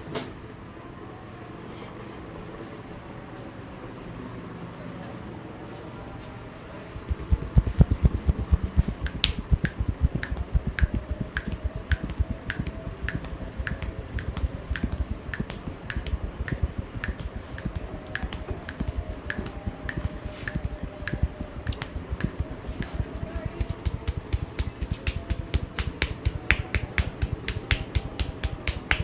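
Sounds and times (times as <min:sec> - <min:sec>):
hands patting body: 0:07.0 - 0:29.0
sharp slapping clicks: 0:07.0 - 0:29.0.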